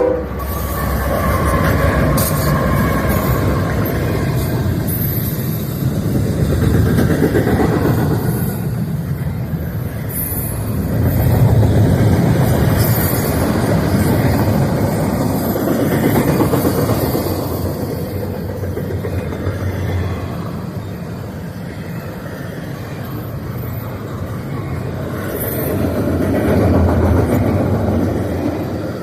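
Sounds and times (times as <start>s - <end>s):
freight train rumbling on rails: 0.0s - 29.0s.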